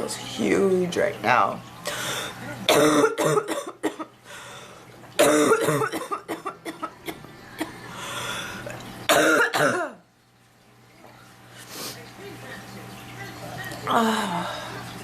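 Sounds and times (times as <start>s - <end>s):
breathing: 1.8s - 2.4s, 4.2s - 4.9s, 7.9s - 8.7s
woman coughing: 2.7s - 4.1s, 5.2s - 7.7s, 9.1s - 10.0s.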